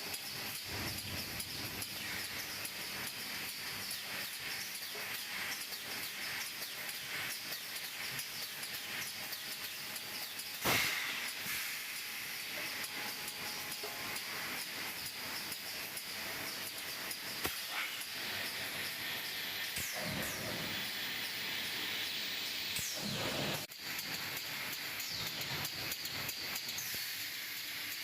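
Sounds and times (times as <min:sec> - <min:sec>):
moulding machine hissing: 0:00.0 - 0:28.0
loud burst of release: 0:10.6 - 0:12.4.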